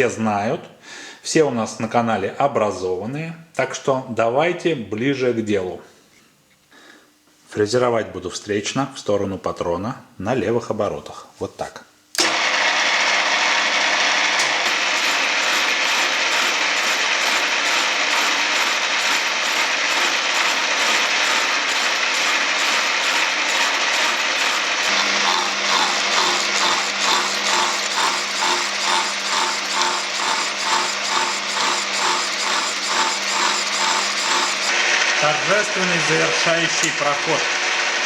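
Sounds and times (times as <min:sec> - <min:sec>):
lathe milling steel: 0:14.0 - 0:34.8.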